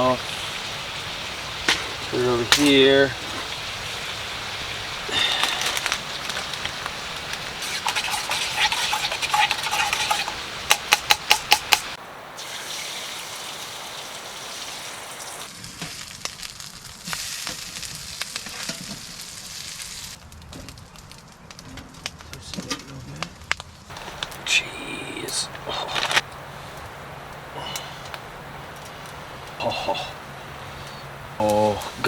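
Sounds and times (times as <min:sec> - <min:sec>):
bacon sizzling in a frying pan: 0:00.0 - 0:20.2
sharp clicks: 0:10.6 - 0:12.0.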